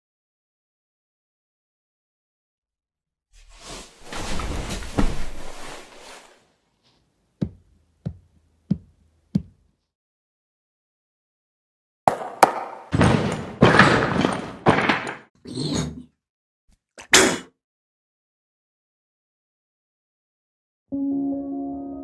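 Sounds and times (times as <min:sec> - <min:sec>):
sharp knocks: 0:07.4 - 0:09.7.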